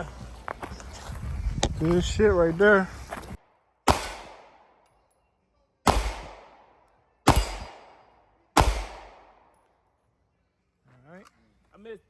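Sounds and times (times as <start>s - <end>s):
gunshots: 3.8s - 4.7s, 5.9s - 9.5s.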